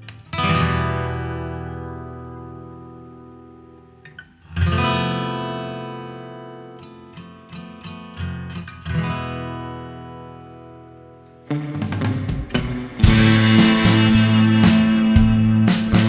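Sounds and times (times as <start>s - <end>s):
acoustic guitar strumming: 8.8s - 16.0s
plucked guitar notes: 11.5s - 16.0s.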